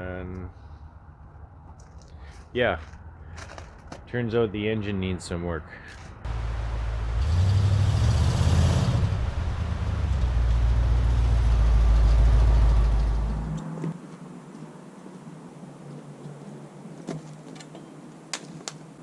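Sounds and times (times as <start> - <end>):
heavy vehicle engine rumble: 5.6 - 13.8.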